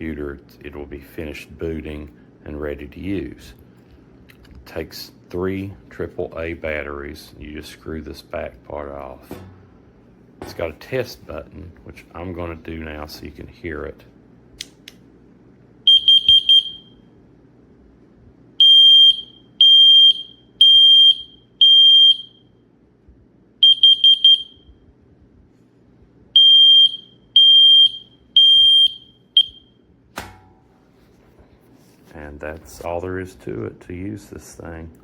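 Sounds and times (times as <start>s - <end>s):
sharp click: 14.6s - 15.0s
smoke alarm beeping: 15.9s - 17.0s, 18.6s - 22.6s, 23.6s - 24.8s, 26.3s - 29.9s.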